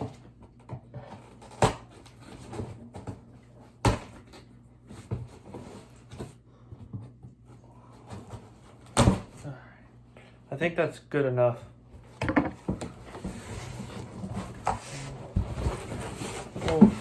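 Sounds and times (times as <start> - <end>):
sharp knocks on cardboard box: 9.0 - 9.4.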